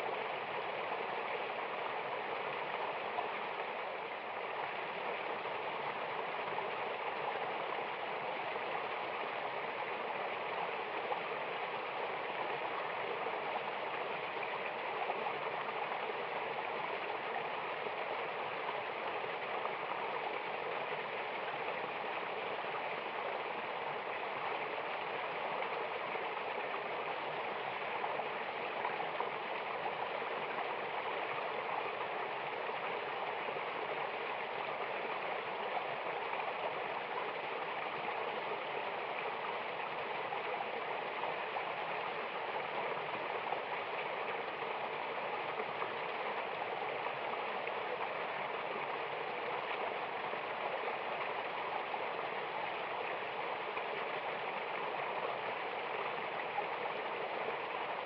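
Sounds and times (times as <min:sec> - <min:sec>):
waterfall and stream rushing: 0:00.0 - 0:58.0.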